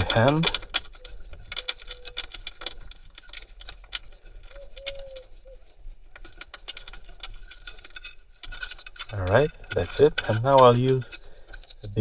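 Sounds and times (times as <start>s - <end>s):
metallic clicks of bolt threading: 0.0s - 5.5s.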